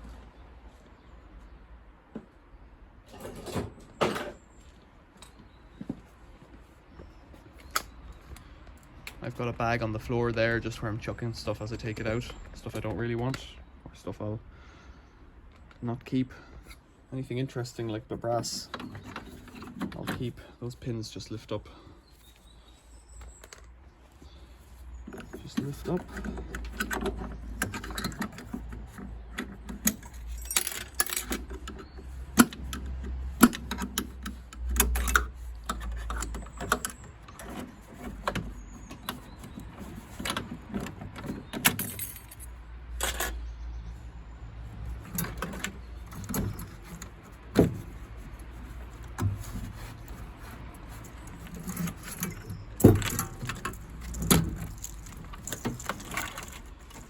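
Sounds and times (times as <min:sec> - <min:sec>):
metallic clicks and knocks: 0:25.1 - 0:43.5, 0:44.8 - 0:57.0.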